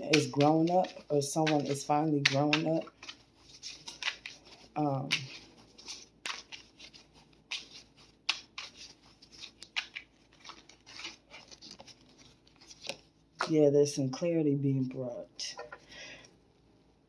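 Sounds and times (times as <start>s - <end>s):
cards being shuffled: 0.0s - 13.6s.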